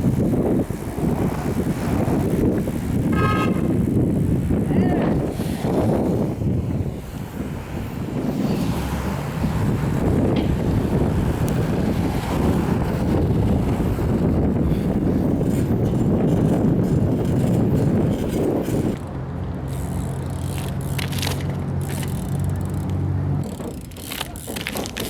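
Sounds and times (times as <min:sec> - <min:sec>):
wind buffeting microphone: 0:00.0 - 0:23.9.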